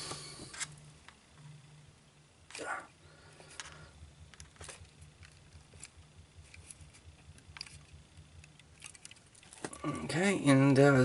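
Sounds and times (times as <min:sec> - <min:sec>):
low steady hum: 0:00.0 - 0:11.0
small plastic parts clicking: 0:03.5 - 0:09.8.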